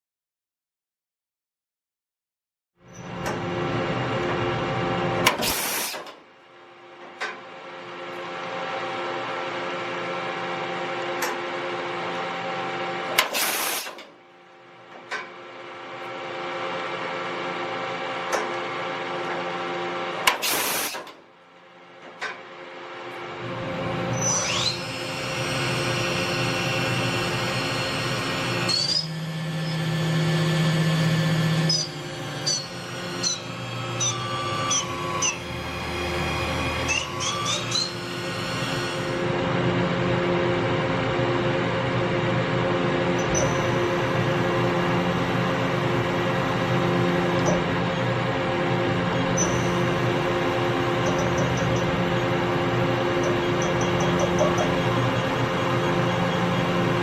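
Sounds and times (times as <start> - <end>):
machine motor whine: 22.6 - 57.0.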